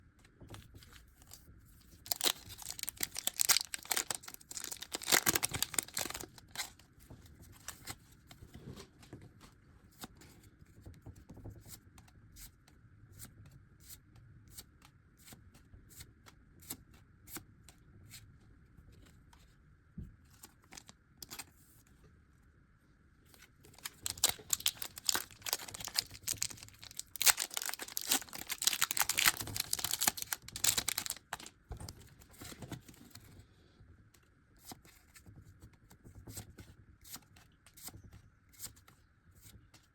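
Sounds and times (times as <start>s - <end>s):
foil wrappers tearing and crinkling: 2.1s - 6.8s, 23.7s - 31.5s.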